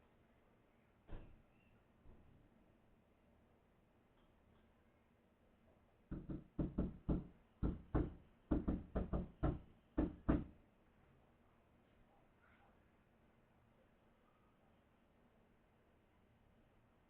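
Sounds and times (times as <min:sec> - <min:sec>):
knuckles knocking on a door: 0:06.1 - 0:10.5.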